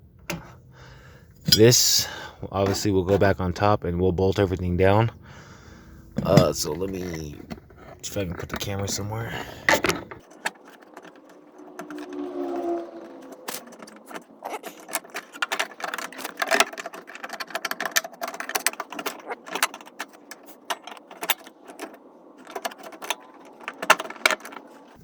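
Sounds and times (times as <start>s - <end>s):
handling clicks and rattling: 6.0s - 25.0s.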